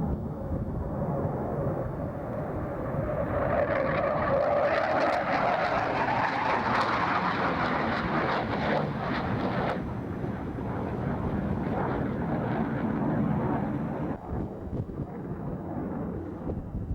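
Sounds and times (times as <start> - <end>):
jet engine roar: 0.0 - 16.9.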